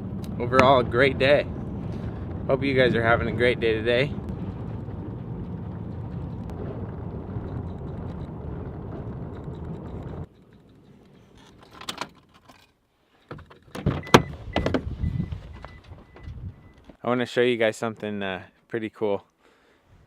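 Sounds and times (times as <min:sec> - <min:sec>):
engine and road noise in cab: 0:00.0 - 0:12.5, 0:13.7 - 0:17.0.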